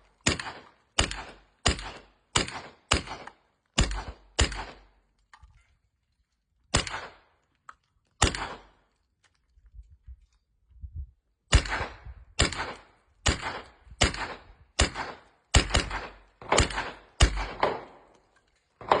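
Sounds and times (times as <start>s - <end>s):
suppressed gunshots with echo: 0.0s - 5.0s, 6.7s - 7.4s, 8.2s - 8.8s, 11.5s - 19.0s.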